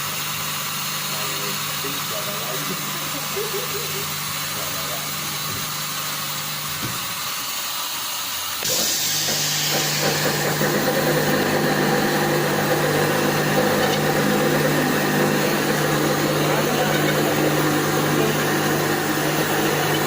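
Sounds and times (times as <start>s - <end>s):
hiss: 1.1s - 11.4s
machinery humming: 8.6s - 20.0s.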